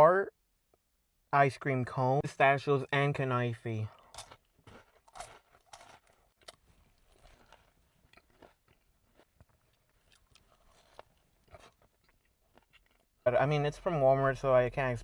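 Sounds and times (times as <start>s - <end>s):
chewing and crunching: 3.9s - 13.2s.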